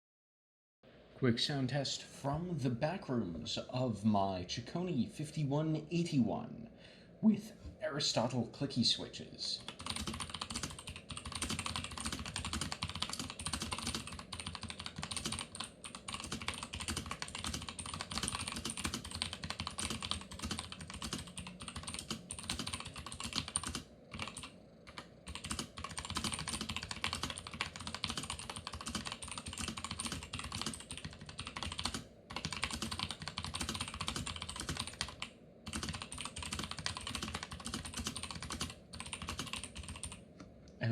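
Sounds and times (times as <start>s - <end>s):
clicky keyboard typing: 9.6s - 40.5s.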